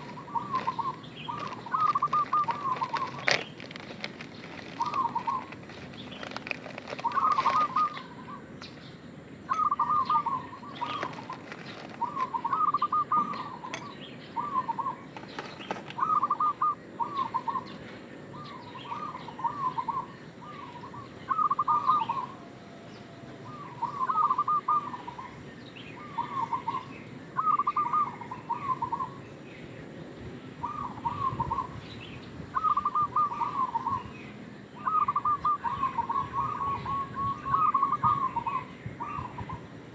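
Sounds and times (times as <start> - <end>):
dove cooing: 0.0 - 8.7, 9.5 - 29.2, 30.6 - 31.9, 32.5 - 39.9.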